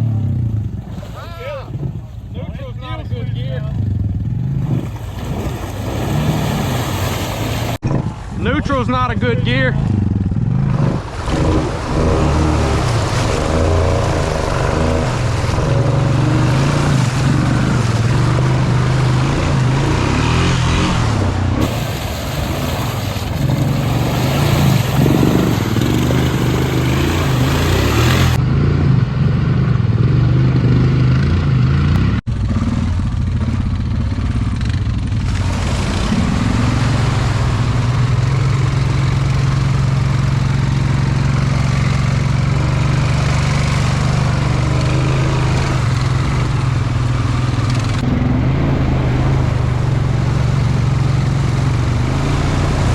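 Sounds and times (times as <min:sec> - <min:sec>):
atv engine revving: 0:00.0 - 0:52.9.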